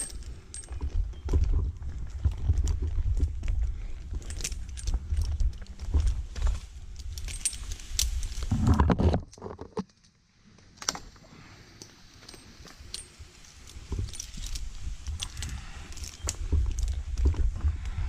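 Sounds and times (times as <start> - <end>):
metal climbing hardware clinking: 0.0 - 8.8, 11.7 - 17.7
rubbing and bumping on microphone: 8.1 - 9.9, 13.7 - 18.0.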